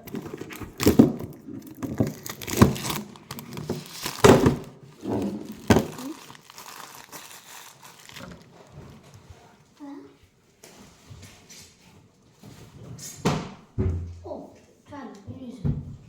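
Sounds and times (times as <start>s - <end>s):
plastic packaging crinkling: 0.0s - 9.2s.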